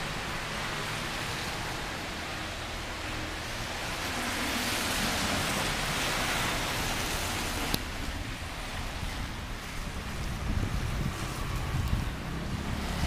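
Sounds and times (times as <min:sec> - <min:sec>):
steady rushing noise: 0:00.0 - 0:13.0.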